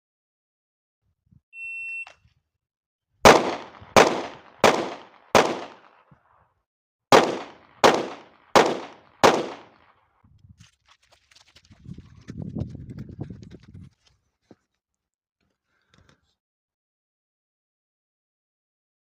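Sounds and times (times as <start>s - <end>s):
shot timer beep: 1.6s - 2.2s
pistol shots with ringing echo: 3.3s - 6.0s, 7.1s - 9.8s.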